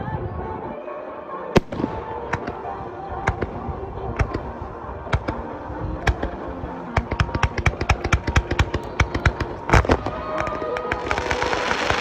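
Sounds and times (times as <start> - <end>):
fireworks bangs and crackling: 1.6 - 12.0.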